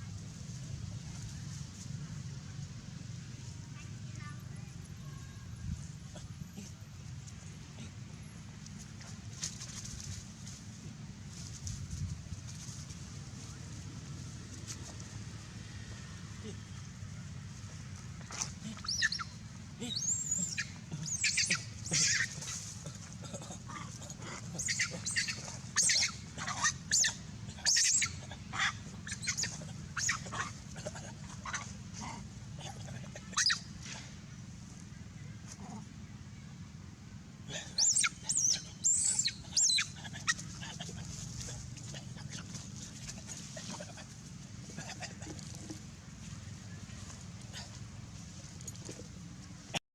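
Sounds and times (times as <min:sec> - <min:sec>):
steady low hum: 0:00.0 - 0:49.8
monkey squeaky calls: 0:18.3 - 0:22.8, 0:24.5 - 0:31.7, 0:33.2 - 0:33.8, 0:37.7 - 0:44.2.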